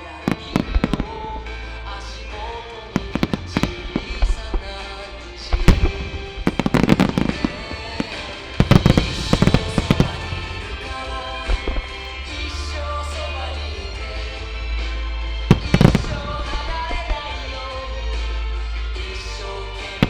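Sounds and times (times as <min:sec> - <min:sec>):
fireworks bangs and crackles: 0:00.0 - 0:20.0
show music: 0:00.0 - 0:20.0.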